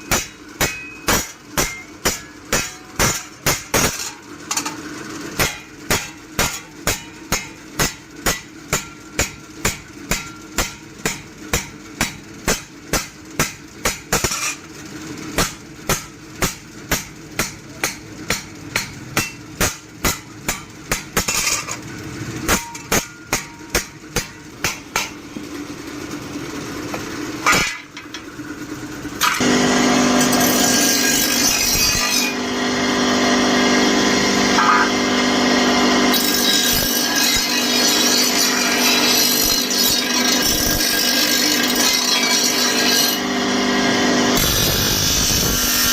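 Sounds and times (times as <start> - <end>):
hammer striking blade on anvil: 0.0 - 4.8, 5.4 - 14.6, 15.3 - 25.2, 27.4 - 28.3, 29.2 - 32.4, 34.5 - 35.0, 36.1 - 43.2
machine motor running: 24.0 - 41.7.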